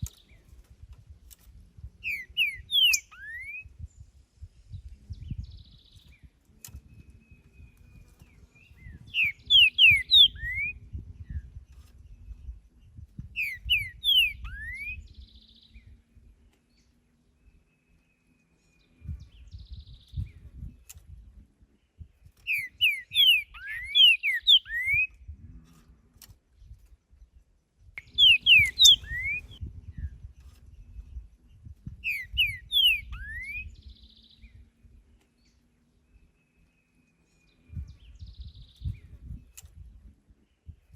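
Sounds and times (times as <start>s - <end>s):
faint low rumble: 0.0s - 22.5s, 25.1s - 40.9s
bird whistling song: 2.0s - 4.1s, 4.7s - 12.4s, 13.3s - 16.0s, 22.3s - 25.3s, 28.0s - 34.7s, 35.4s - 39.5s.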